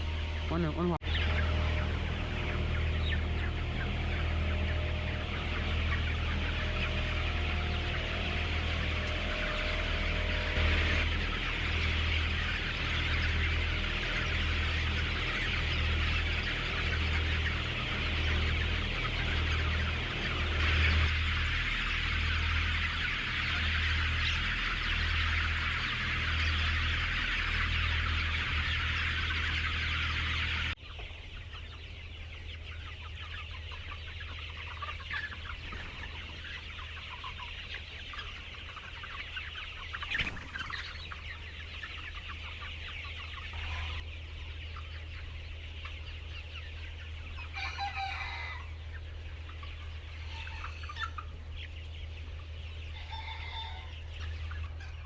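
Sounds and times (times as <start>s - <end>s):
chickens clucking: 0.0s - 55.0s
rooster crowing: 47.6s - 48.8s.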